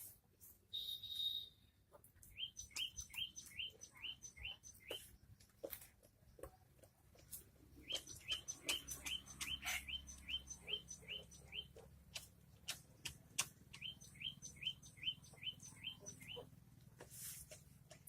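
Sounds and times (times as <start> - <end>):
sharp clicks: 11.7 - 13.9.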